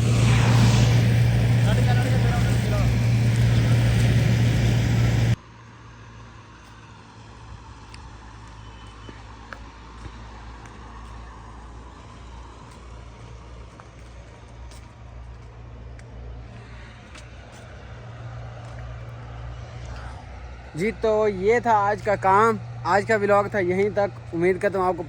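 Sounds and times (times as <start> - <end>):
farm machinery engine running: 0.0 - 5.4.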